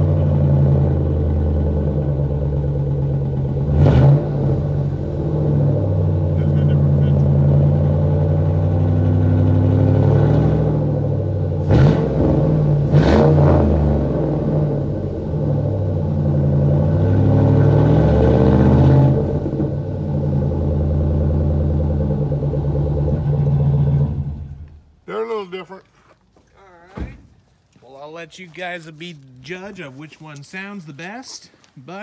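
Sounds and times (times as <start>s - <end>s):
truck exhaust idling and revving: 0.0s - 25.1s.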